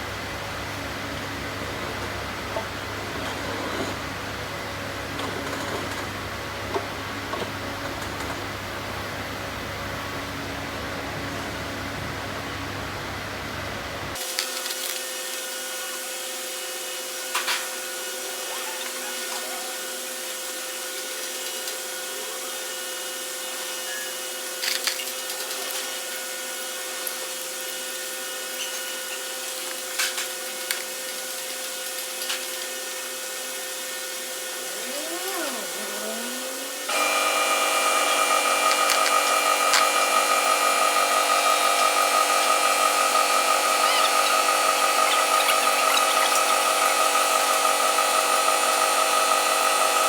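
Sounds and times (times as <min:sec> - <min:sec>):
small motor humming: 0:34.1 - 0:50.0.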